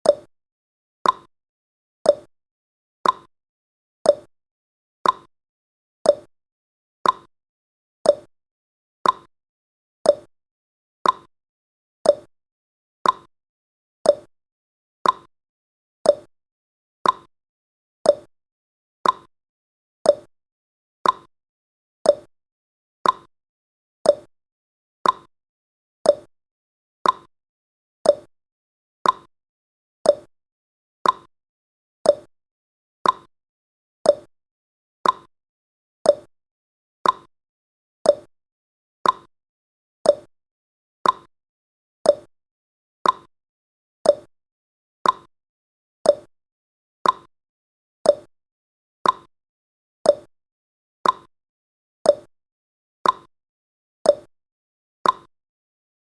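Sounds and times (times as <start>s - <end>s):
timer ticking: 0.0s - 0.3s, 1.0s - 1.3s, 2.1s - 2.3s, 3.0s - 3.3s, 4.1s - 4.3s, 5.0s - 5.3s, 6.1s - 6.3s, 7.0s - 7.3s, 8.1s - 8.3s, 9.0s - 9.3s, 10.1s - 10.3s, 11.0s - 11.3s, 12.0s - 12.3s, 13.0s - 13.3s, 14.1s - 14.3s, 15.0s - 15.3s, 16.1s - 16.3s, 17.0s - 17.3s, 18.0s - 18.3s, 19.0s - 19.3s, 20.1s - 20.3s, 21.0s - 21.3s, 22.0s - 22.3s, 23.0s - 23.3s, 24.1s - 24.3s, 25.0s - 25.3s, 26.0s - 26.3s, 27.0s - 27.3s, 28.0s - 28.3s, 29.0s - 29.3s, 30.0s - 30.3s, 31.0s - 31.3s, 32.1s - 32.3s, 33.0s - 33.3s, 34.0s - 34.3s, 35.0s - 35.3s, 36.0s - 36.3s, 37.0s - 37.3s, 38.0s - 38.3s, 39.0s - 39.3s, 40.0s - 40.3s, 41.0s - 41.3s, 42.0s - 42.3s, 43.0s - 43.3s, 44.0s - 44.3s, 45.0s - 45.3s, 46.1s - 46.3s, 47.0s - 47.3s, 48.1s - 48.3s, 49.0s - 49.3s, 50.1s - 50.3s, 51.0s - 51.3s, 52.1s - 52.3s, 53.0s - 53.3s, 54.1s - 54.3s, 55.0s - 55.3s.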